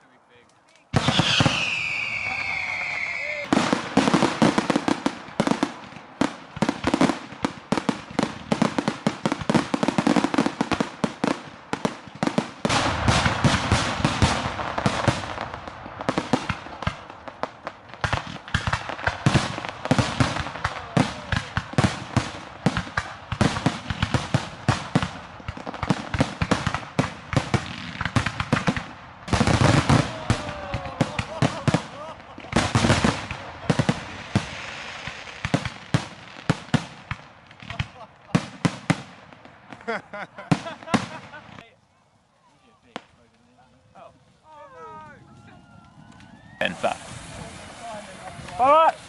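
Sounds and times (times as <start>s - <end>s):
fireworks crackles and bangs: 0.0s - 41.8s, 42.5s - 49.0s
fizzing hiss: 46.6s - 49.0s.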